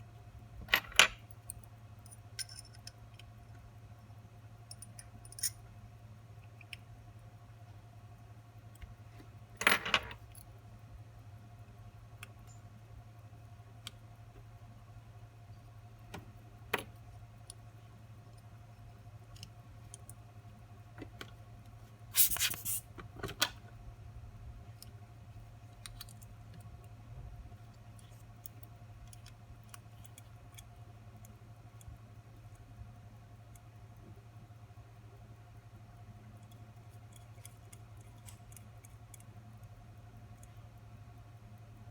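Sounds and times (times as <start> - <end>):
steady low hum: 0.0 - 41.9
metallic clicks and taps of tools: 0.7 - 3.4, 4.7 - 5.6, 6.4 - 6.9, 19.3 - 20.2, 25.7 - 27.0, 27.7 - 32.6, 36.3 - 40.7.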